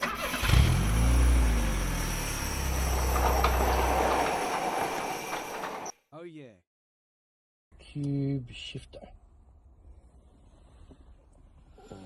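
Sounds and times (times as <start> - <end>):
vehicle engine low drone: 0.4 - 4.1
road and rushing noise: 0.9 - 5.9.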